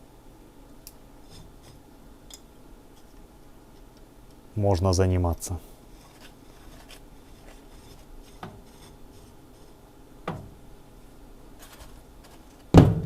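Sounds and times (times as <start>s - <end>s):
knock: 12.8s - 13.0s.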